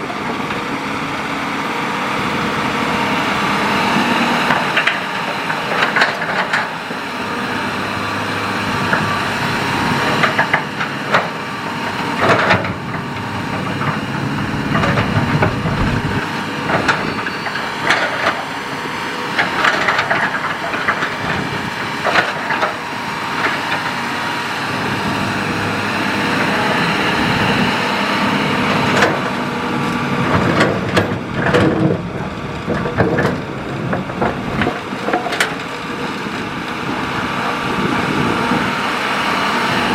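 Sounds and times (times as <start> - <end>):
excavator diesel engine running: 0.0 - 39.9
bucket scraping gravel and stones: 15.0 - 16.3.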